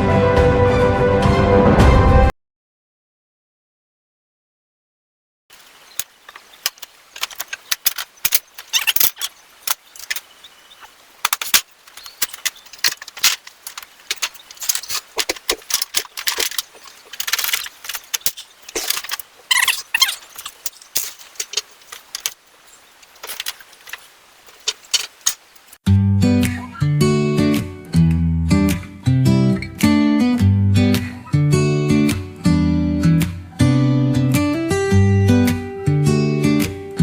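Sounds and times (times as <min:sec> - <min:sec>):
metal tools clinking and rattling: 0:05.6 - 0:25.8.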